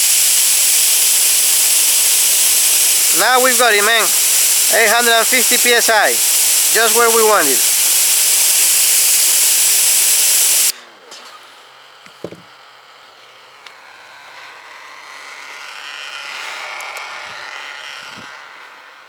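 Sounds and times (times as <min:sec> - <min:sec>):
pressure washer spraying hiss: 0:00.0 - 0:10.7
soft hiss: 0:00.0 - 0:10.7.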